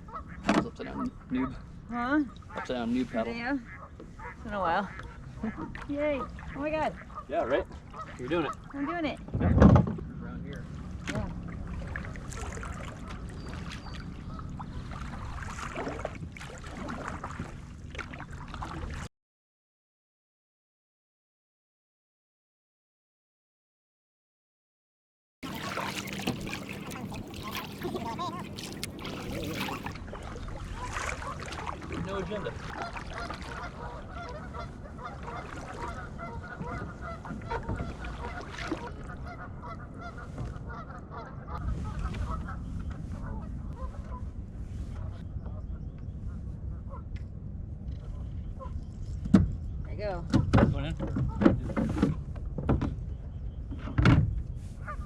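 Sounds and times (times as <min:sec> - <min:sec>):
geese honking: 0:00.0 - 0:09.2, 0:25.4 - 0:29.9, 0:30.8 - 0:42.6
kayak paddle splashing in water: 0:10.6 - 0:19.1, 0:25.4 - 0:40.9
steady low rumble: 0:39.1 - 0:50.0.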